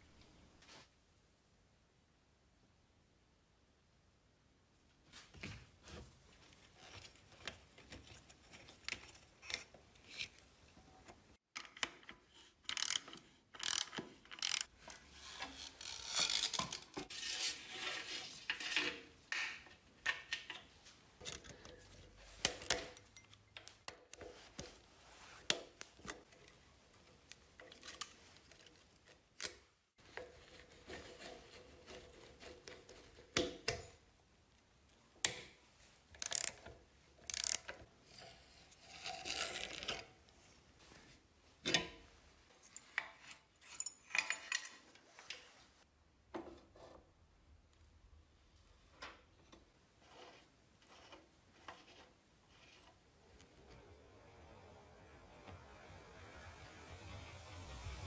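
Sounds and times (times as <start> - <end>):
scraping and rubbing metal: 14.5 - 23.0, 49.9 - 58.0.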